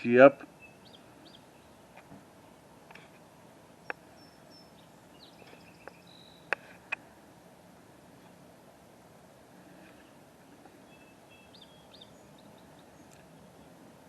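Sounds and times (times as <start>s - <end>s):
faint bird chirps: 0.4s - 1.8s, 3.8s - 6.6s, 9.7s - 13.8s.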